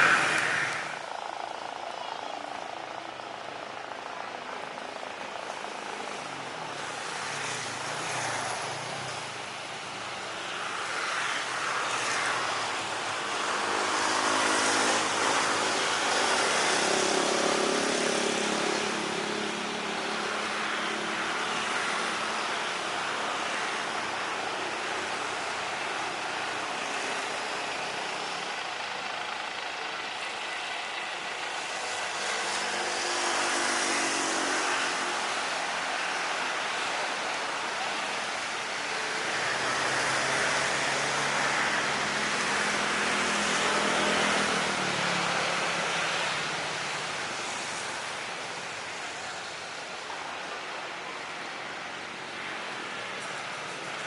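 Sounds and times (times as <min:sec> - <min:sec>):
aircraft engine noise: 0:00.0 - 0:54.0.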